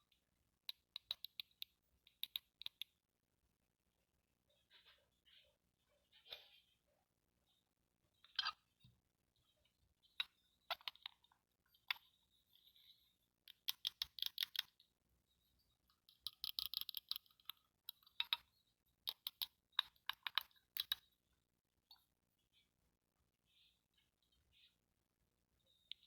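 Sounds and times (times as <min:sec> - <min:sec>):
plastic toy pieces clicking: 0:13.5 - 0:14.8, 0:16.1 - 0:18.4, 0:19.1 - 0:21.0.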